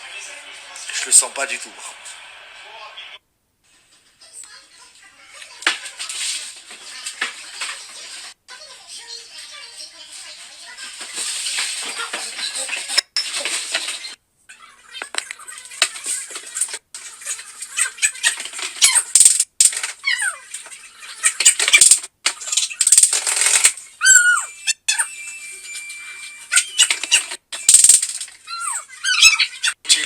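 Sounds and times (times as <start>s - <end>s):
utensils clinking against pans: 11.8s - 14.2s.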